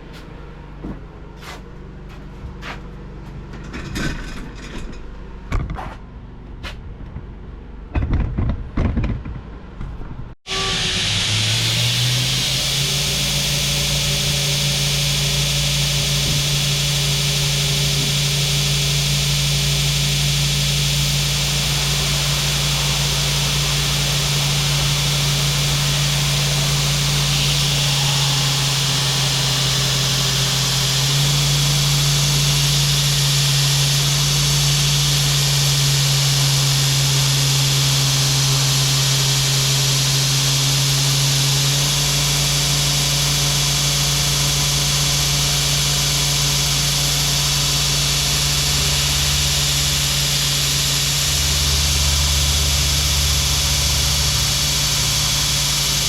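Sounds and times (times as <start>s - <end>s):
electric motor humming: 10.5s - 56.0s
broad hiss: 11.3s - 36.0s.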